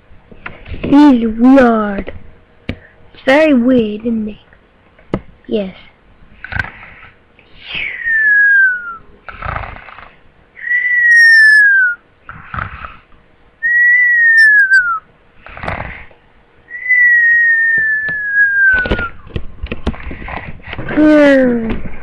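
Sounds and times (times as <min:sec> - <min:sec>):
person snoring: 0:09.2 - 0:10.2, 0:12.3 - 0:13.1, 0:15.4 - 0:16.1
high whistle sliding down: 0:10.6 - 0:12.0, 0:13.6 - 0:15.0, 0:16.7 - 0:19.2.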